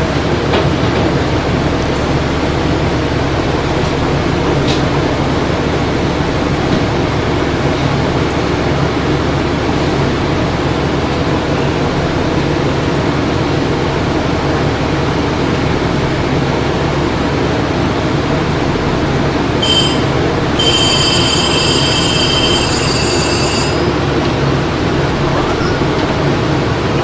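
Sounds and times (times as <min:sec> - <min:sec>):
train wheels rumbling on rail: 0:00.0 - 0:27.0
high-pitched metallic squeal: 0:19.6 - 0:24.1.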